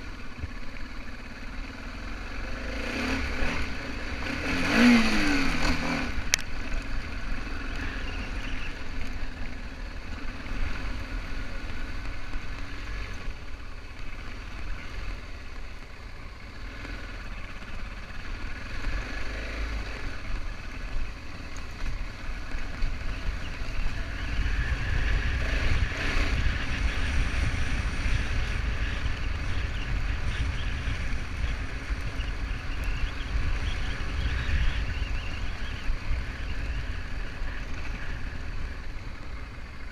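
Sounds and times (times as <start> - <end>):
motorcycle engine revving: 0.0 - 39.9
motorcycle engine running: 0.0 - 39.9
wind buffeting microphone: 23.1 - 37.1.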